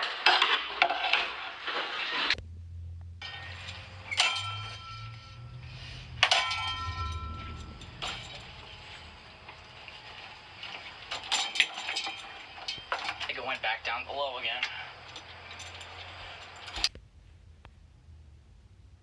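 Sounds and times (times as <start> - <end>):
low hum: 2.4 - 19.0
quick clinks: 3.2 - 13.4, 14.7 - 16.9
sharp metallic clangs: 3.2 - 16.9.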